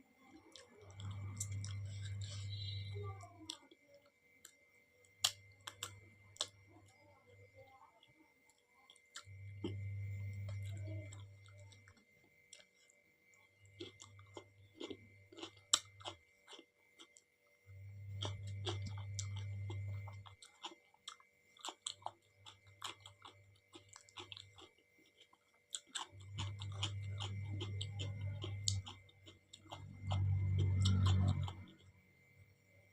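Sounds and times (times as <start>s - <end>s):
low hum: 0.0s - 3.4s, 9.2s - 12.0s, 17.6s - 20.5s, 26.1s - 32.9s
wet chewing: 0.4s - 3.8s, 5.2s - 6.8s, 8.9s - 17.3s, 18.0s - 32.0s.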